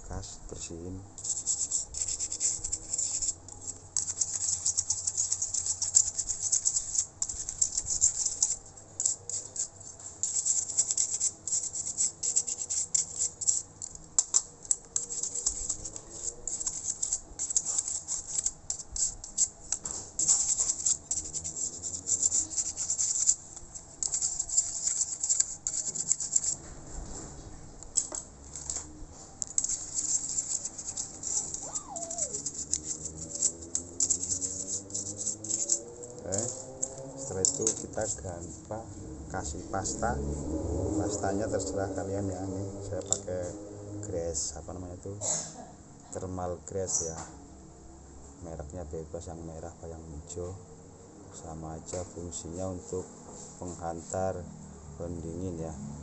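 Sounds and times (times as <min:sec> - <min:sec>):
toothbrush scrubbing fan: 0:01.2 - 0:26.6, 0:29.4 - 0:38.8, 0:39.4 - 0:43.4.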